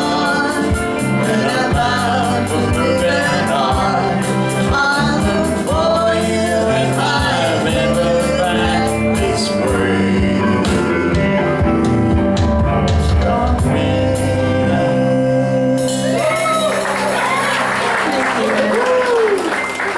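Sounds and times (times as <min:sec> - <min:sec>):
instrumental accompaniment: 0:00.0 - 0:18.4
audience applause: 0:16.2 - 0:19.9.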